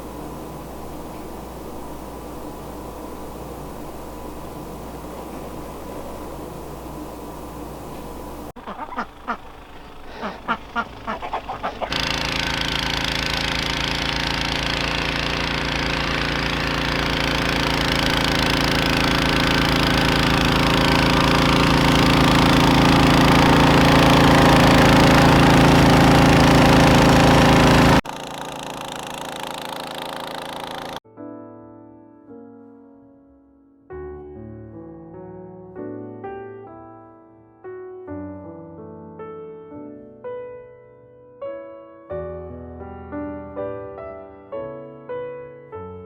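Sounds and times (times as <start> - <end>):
loud mechanical drone: 0.0 - 31.0
ducks quacking: 8.6 - 12.0.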